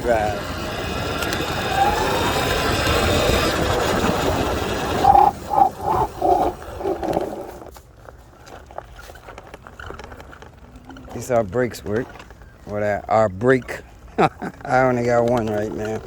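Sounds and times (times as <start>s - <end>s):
brake squeals: 0.0s - 7.7s
electric motor whine: 0.0s - 7.7s.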